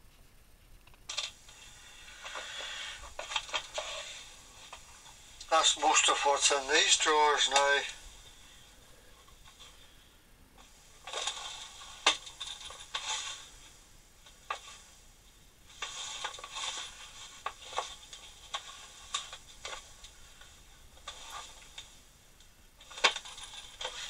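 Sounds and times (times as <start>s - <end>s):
metal tools rattling in drawers: 22.8s - 24.0s.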